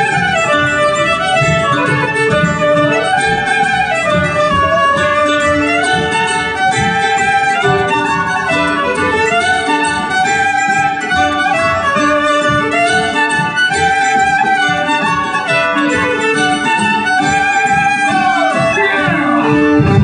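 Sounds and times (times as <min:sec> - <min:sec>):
fiddle melody: 0:00.0 - 0:20.0
strummed guitar: 0:00.0 - 0:20.0.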